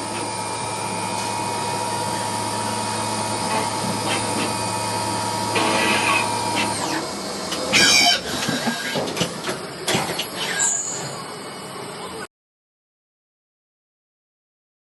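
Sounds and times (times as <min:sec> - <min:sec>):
machine hum: 0:00.0 - 0:09.1
loud metallic squeal: 0:07.7 - 0:09.0.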